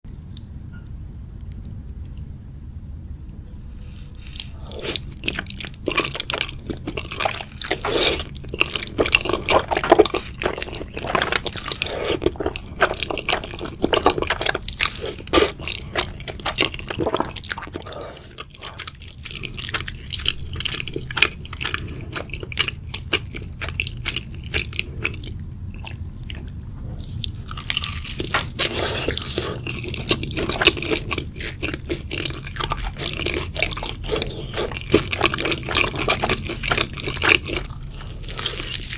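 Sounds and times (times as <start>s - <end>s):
wet chewing and slurping: 3.8s - 38.9s
mouth smacking and squishing: 4.1s - 38.9s.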